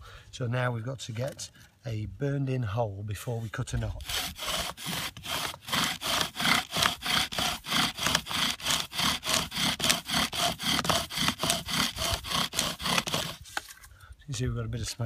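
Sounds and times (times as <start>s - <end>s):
bow drill rasping on wood: 4.0s - 13.6s.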